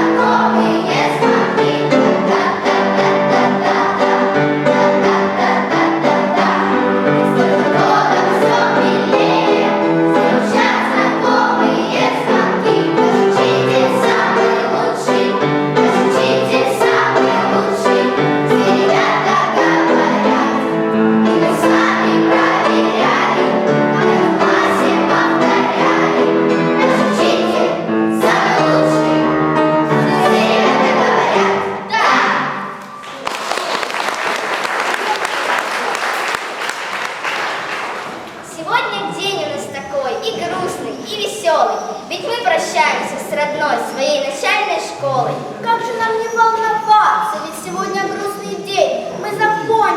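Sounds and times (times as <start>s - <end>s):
instrumental accompaniment: 0.0s - 33.8s
children's choir singing: 0.0s - 49.9s.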